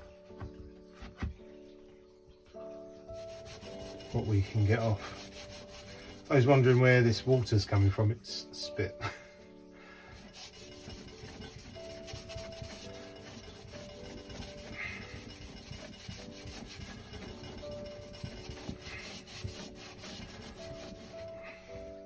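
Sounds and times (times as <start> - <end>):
faint guitar music: 0.0 - 22.0
hand scrubbing with polishing paste: 3.1 - 8.7, 10.2 - 21.7.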